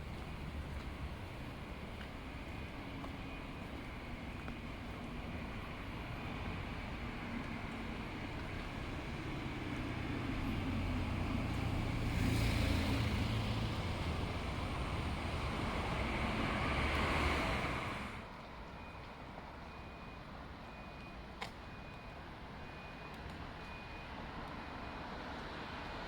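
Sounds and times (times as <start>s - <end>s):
low engine hum: 0.0s - 18.3s
tyres hissing on wet road: 4.2s - 18.3s.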